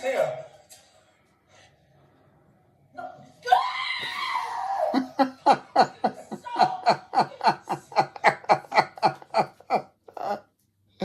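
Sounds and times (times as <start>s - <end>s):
person laughing hard: 4.9s - 10.4s.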